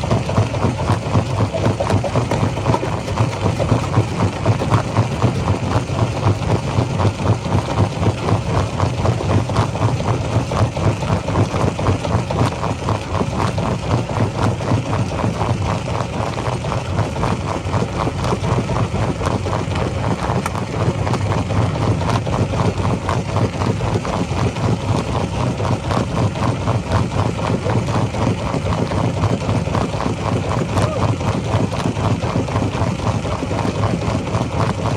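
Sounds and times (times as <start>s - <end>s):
rock-crushing machinery running: 0.0s - 16.7s.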